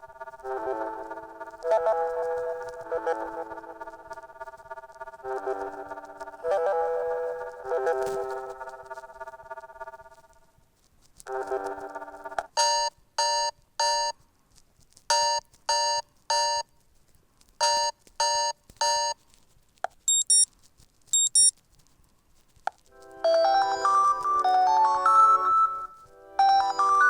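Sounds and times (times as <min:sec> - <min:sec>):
phone ringtone melody: 0:20.1 - 0:20.4, 0:21.2 - 0:21.5, 0:23.3 - 0:27.0
high-pitched phone chirps: 0:20.1 - 0:20.5, 0:21.1 - 0:21.5
short electronic beeps: 0:20.1 - 0:20.5, 0:21.1 - 0:21.5.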